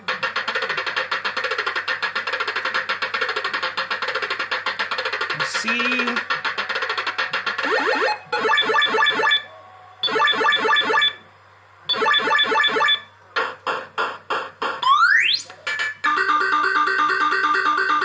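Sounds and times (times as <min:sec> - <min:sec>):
electronic rapid beeping: 0:07.5 - 0:11.2, 0:11.9 - 0:13.1
electronic blips: 0:07.6 - 0:09.4, 0:10.0 - 0:11.2, 0:11.9 - 0:13.1.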